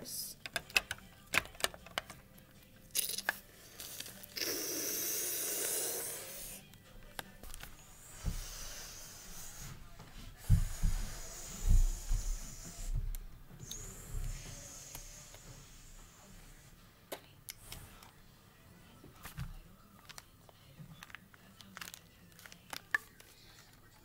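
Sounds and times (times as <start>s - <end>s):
breathy hissing whoosh: 4.4s - 6.6s, 7.9s - 16.8s.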